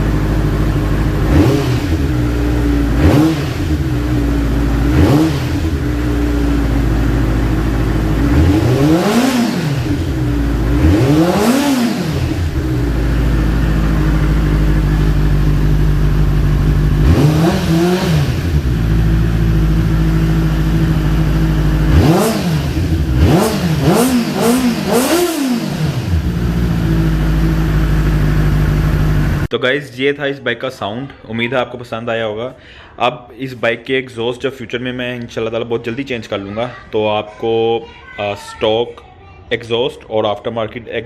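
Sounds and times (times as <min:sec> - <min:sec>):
motorcycle engine idling and revving: 0:00.0 - 0:29.5.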